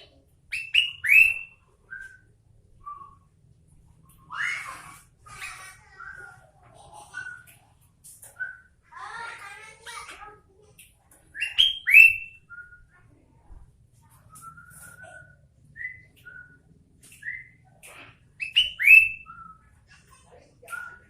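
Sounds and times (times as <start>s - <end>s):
bird whistled song: 0.5s - 3.4s, 4.1s - 4.9s, 5.9s - 6.5s, 8.2s - 8.8s, 11.3s - 13.1s, 14.0s - 19.8s, 20.6s - 21.0s.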